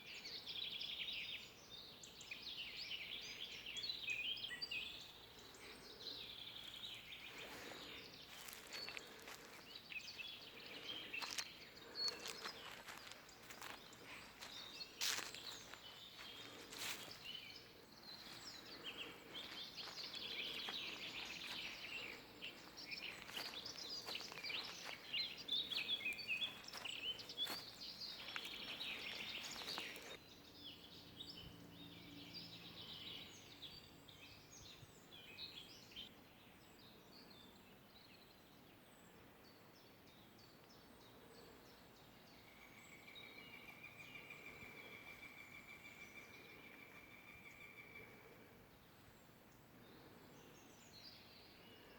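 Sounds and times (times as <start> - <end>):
small birds chirping and singing: 0.0 - 51.9.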